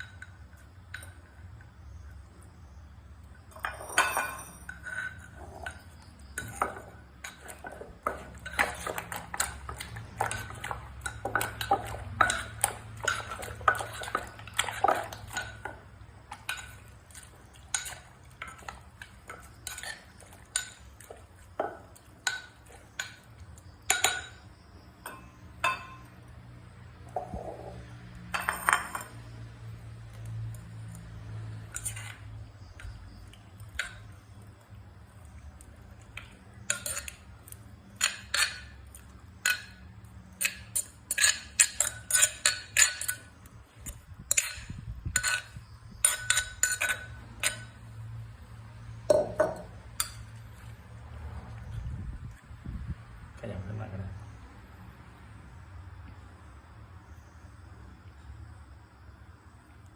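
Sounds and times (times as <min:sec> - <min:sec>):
spoon scraping mortar: 0:03.4 - 0:25.4, 0:31.5 - 0:34.4, 0:36.1 - 0:48.0.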